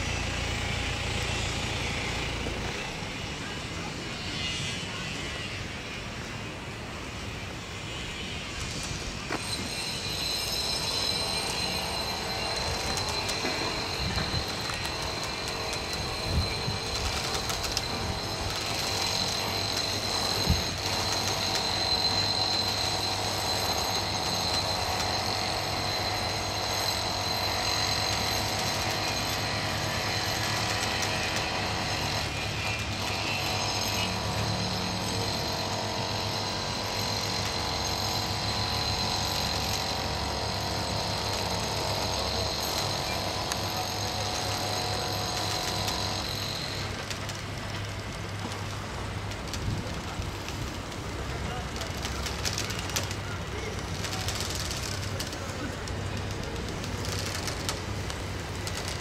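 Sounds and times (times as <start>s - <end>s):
machinery running: 0.0s - 59.0s.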